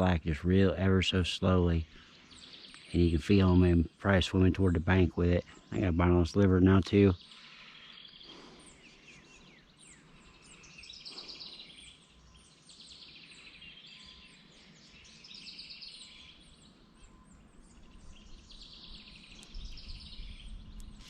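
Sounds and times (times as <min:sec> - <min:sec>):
birds chirping and trilling: 0:00.0 - 0:21.0.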